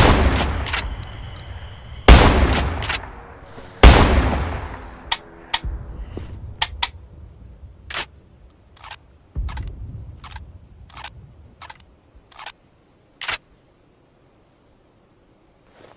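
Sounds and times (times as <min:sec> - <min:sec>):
low rumble: 0:00.0 - 0:12.2.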